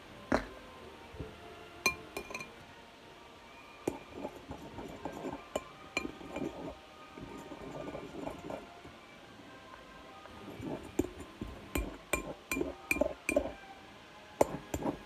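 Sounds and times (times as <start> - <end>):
utensil clinking on container: 1.9 - 2.5, 3.9 - 8.6, 10.5 - 13.6, 14.4 - 15.0.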